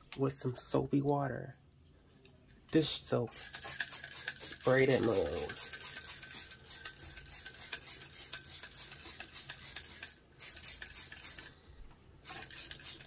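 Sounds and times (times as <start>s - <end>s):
spray bottle spritzing: 3.3s - 11.6s, 12.2s - 13.0s.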